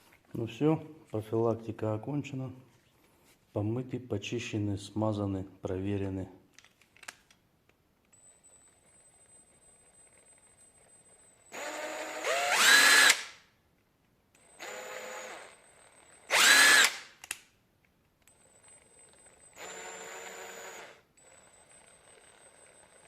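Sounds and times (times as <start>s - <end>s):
impact wrench motor winding up: 11.5s - 13.4s, 14.4s - 17.4s, 18.2s - 23.0s.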